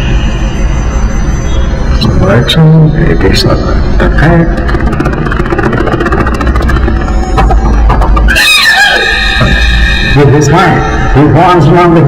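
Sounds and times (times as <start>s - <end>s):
steady low rumble: 0.0s - 8.4s
vocal percussive clicks and beats: 4.0s - 10.2s.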